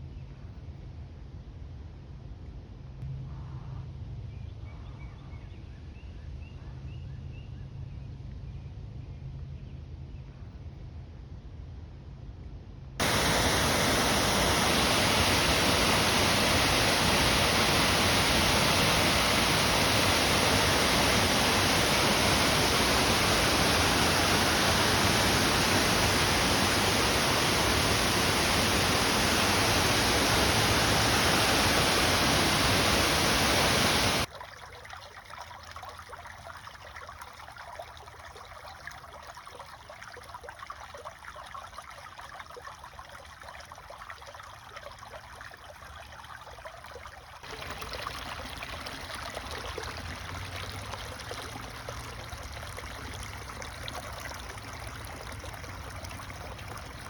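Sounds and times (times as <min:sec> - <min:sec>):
rushing water: 0:13.0 - 0:57.0
stream trickling and gurgling: 0:13.0 - 0:57.0.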